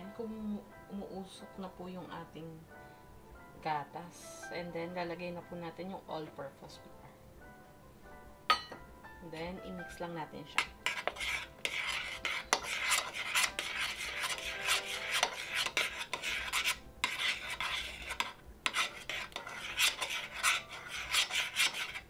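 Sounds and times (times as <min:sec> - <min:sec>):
utensil scraping roux in a pan: 0:10.5 - 0:22.0.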